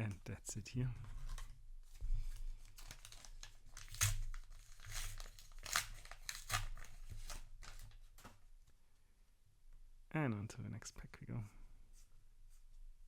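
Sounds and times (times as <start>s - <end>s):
foil wrapper crinkling: 2.6s - 8.3s.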